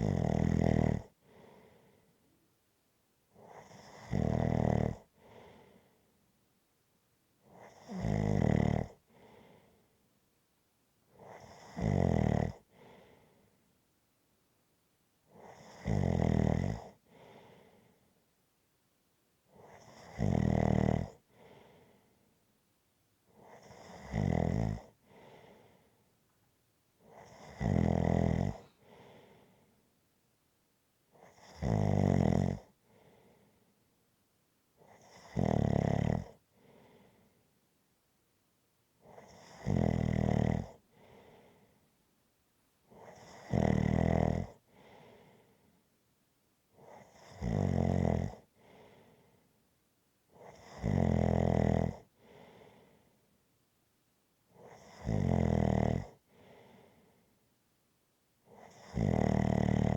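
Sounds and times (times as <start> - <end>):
person snoring: 0.0 - 1.1, 3.5 - 5.1, 7.6 - 9.0, 11.3 - 12.6, 15.4 - 17.0, 19.7 - 21.2, 23.4 - 25.6, 27.1 - 29.1, 31.3 - 32.7, 34.9 - 36.4, 39.1 - 41.2, 43.0 - 45.2, 47.0 - 48.4, 50.4 - 52.7, 54.7 - 56.2, 58.6 - 59.9
soft breath: 1.1 - 2.6, 5.1 - 6.3, 9.0 - 10.1, 12.6 - 13.8, 16.9 - 18.3, 21.2 - 22.4, 24.9 - 26.4, 28.5 - 30.0, 32.7 - 34.0, 36.4 - 37.6, 40.8 - 42.0, 44.6 - 45.9, 48.4 - 49.6, 52.0 - 53.4, 56.2 - 57.5.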